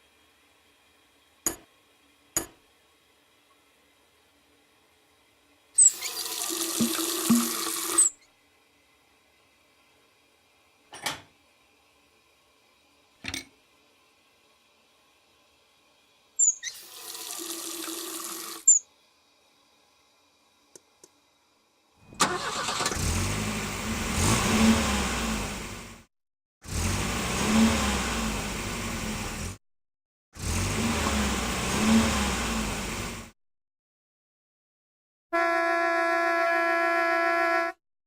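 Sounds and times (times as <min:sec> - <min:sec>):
car engine starting and revving: 0:22.2 - 0:29.6, 0:30.4 - 0:33.3.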